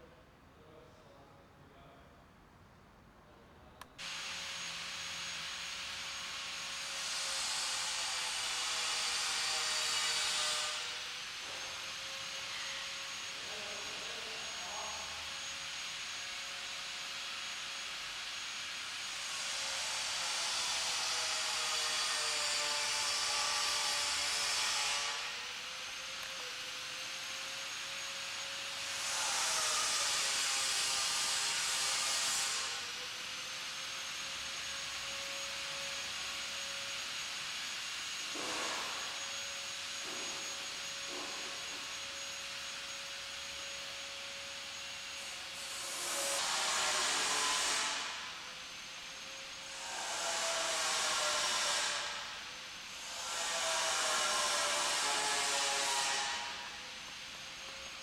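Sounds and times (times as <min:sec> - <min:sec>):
power tool motor whine: 0:04.0 - 0:58.0
tool hissing against metal panels: 0:38.0 - 0:39.3, 0:45.2 - 0:48.4, 0:49.6 - 0:52.4, 0:53.0 - 0:56.8.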